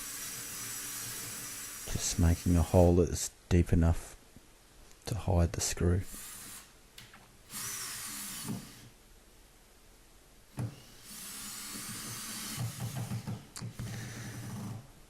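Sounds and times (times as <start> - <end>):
electric drill boring plasterboard: 0.0 - 2.8, 7.5 - 8.9, 10.6 - 14.8
drill click: 7.5 - 8.9, 10.5 - 14.8.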